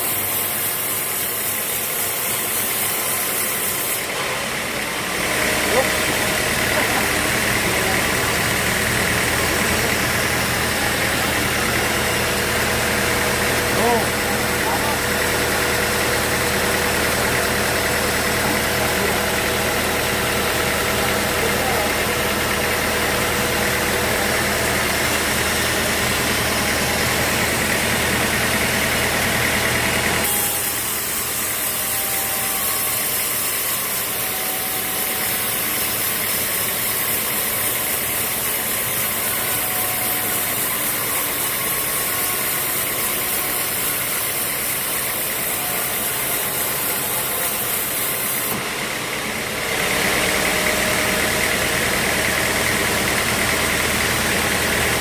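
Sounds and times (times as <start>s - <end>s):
engine low hum: 4.0s - 30.9s, 48.5s - 55.0s.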